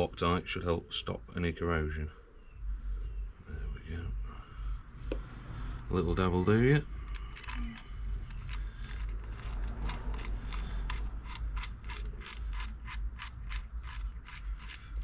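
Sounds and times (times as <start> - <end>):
hand ratchet clicking: 7.1 - 15.0.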